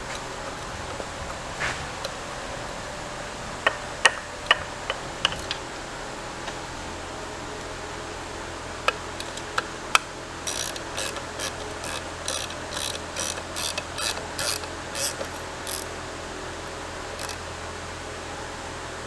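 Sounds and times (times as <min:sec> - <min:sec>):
hand ratchet clicking: 0:03.6 - 0:15.9, 0:17.2 - 0:17.4.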